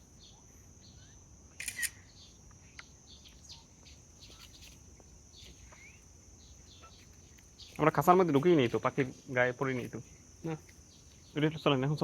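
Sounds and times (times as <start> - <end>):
birds chirping: 0.0 - 12.0
steady high-pitched hum: 0.0 - 12.0.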